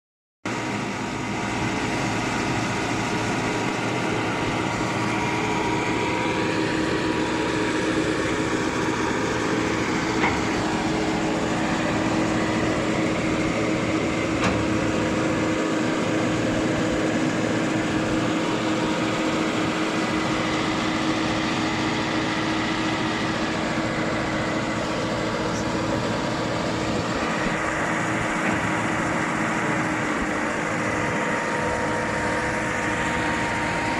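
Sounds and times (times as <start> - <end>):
construction machine engine running: 0.5 - 33.9.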